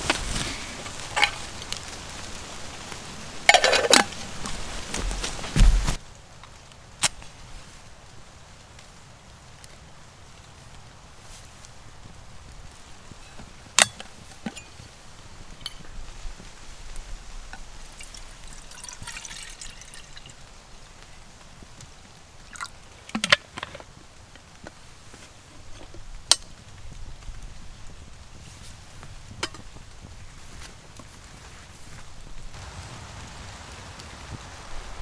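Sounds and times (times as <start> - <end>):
kettle handling clicks and knocks: 1.1 - 1.6, 3.4 - 6.0, 13.8 - 14.8, 17.6 - 20.2, 22.5 - 23.9, 29.4 - 29.7
water dripping: 17.0 - 21.4, 22.4 - 23.4
water pouring into a kettle: 17.6 - 20.5, 22.5 - 23.2.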